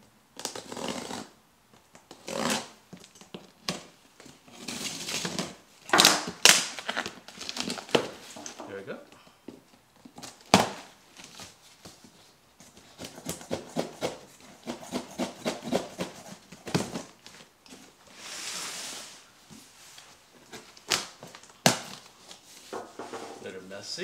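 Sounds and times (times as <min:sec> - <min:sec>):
short hissing scrape: 0:18.1 - 0:19.3.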